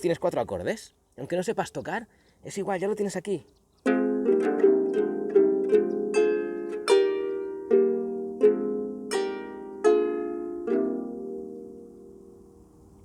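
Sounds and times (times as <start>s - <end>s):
harp arpeggio: 3.8s - 12.6s.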